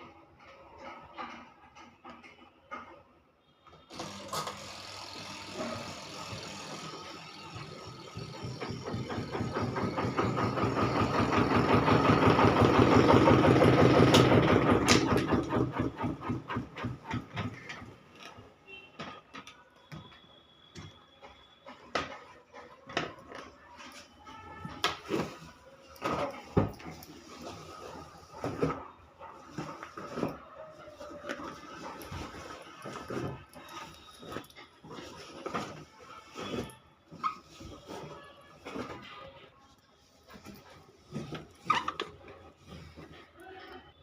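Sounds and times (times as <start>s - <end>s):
spin dryer rhythmic rattle: 4.0s - 17.8s.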